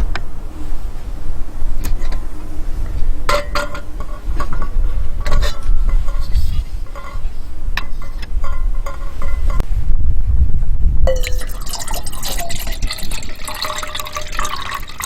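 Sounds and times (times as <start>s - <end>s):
steady low rumble: 0.0s - 15.0s
tableware clinking: 11.1s - 15.0s.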